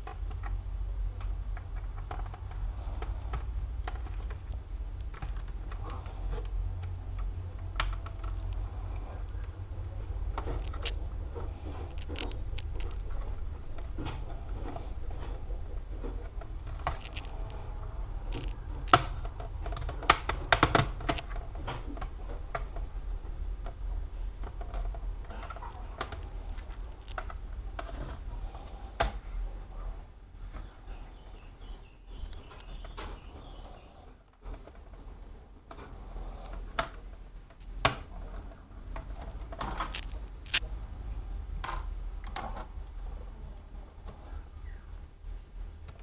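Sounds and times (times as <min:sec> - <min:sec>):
steady low hum: 0:00.0 - 0:46.0
plastic parts and tools clicking: 0:01.2 - 0:29.2, 0:34.3 - 0:40.7
sharp plastic snaps: 0:18.3 - 0:22.9, 0:23.6 - 0:29.2, 0:35.7 - 0:38.2, 0:38.9 - 0:40.7.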